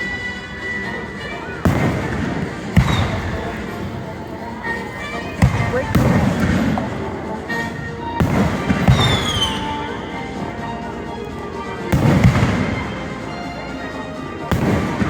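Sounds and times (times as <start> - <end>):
faint music: 0.0 - 15.0
firework booms: 1.3 - 10.7, 11.9 - 13.6, 14.4 - 15.0
firework falling whistle: 1.6 - 6.8, 8.2 - 10.1.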